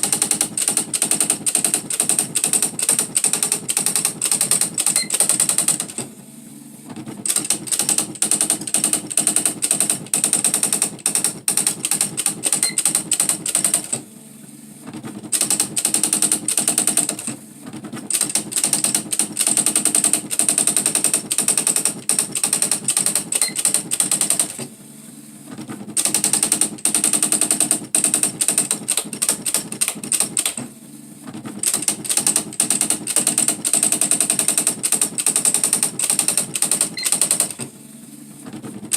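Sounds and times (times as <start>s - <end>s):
typewriter striking clicks: 0.0s - 6.1s, 7.2s - 14.0s, 15.3s - 17.4s, 18.0s - 24.7s, 26.0s - 30.7s, 31.6s - 37.7s.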